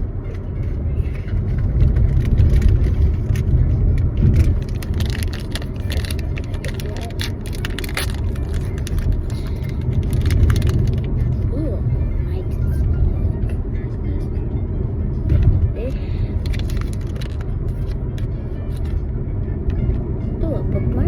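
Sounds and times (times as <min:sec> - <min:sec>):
car road rumble: 0:00.0 - 0:21.0
packaging clicks and rustles: 0:01.1 - 0:11.3, 0:16.3 - 0:18.9.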